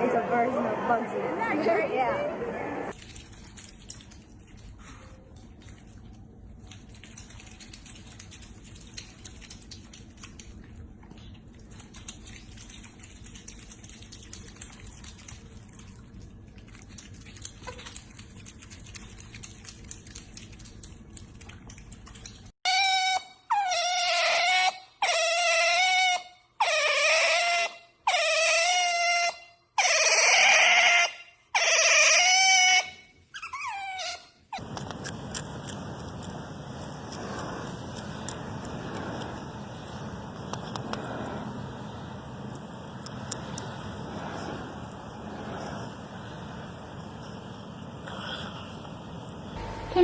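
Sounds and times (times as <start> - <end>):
small clicks: 34.6 - 39.4.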